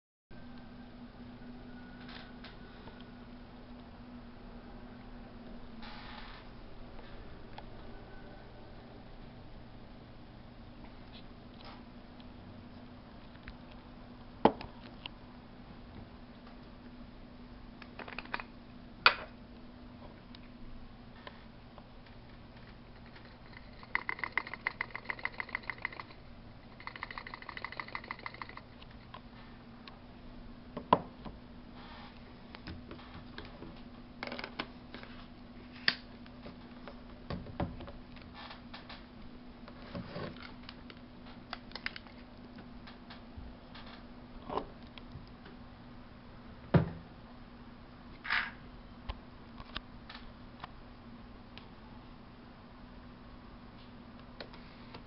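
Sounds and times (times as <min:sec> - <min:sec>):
low mechanical lens hum: 0:00.4 - 0:55.0
fast ticking: 0:23.5 - 0:28.6.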